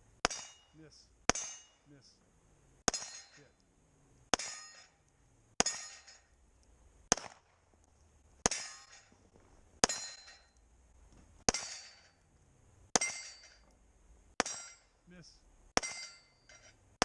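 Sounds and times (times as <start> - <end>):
pistol shots: 0.2 - 0.7, 2.9 - 3.4, 5.6 - 6.0, 7.1 - 7.6
steel target ringing: 0.2 - 1.9, 2.9 - 3.6, 4.3 - 5.0, 5.6 - 6.3, 8.4 - 9.1, 9.8 - 10.6, 11.5 - 12.2, 13.0 - 13.6, 14.4 - 14.9, 15.8 - 16.8.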